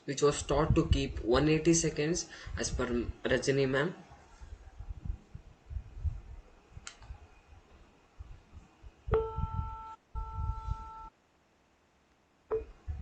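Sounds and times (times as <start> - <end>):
click: 6.8 - 7.1
buzzer beeps: 9.1 - 11.1.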